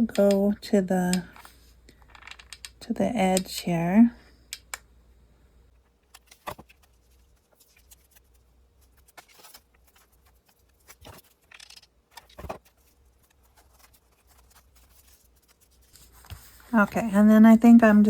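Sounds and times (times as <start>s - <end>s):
paper rustling: 5.9s - 17.2s.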